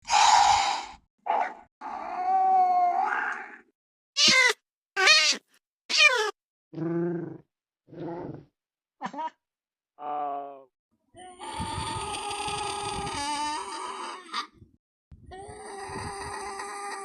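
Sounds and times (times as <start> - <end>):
cat-like meows and yowls: 1.8 - 3.6, 4.2 - 6.3.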